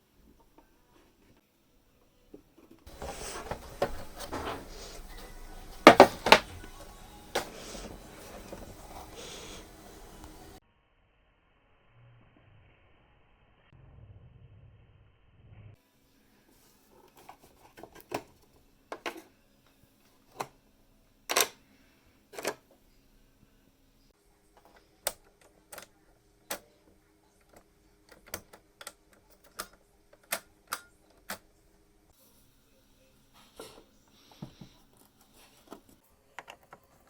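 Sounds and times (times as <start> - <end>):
hand tools clicking and knocking: 5.8 - 6.7.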